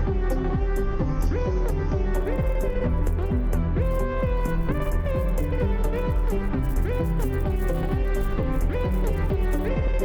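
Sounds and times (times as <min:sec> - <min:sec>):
music with steady beat: 0:00.0 - 0:10.0.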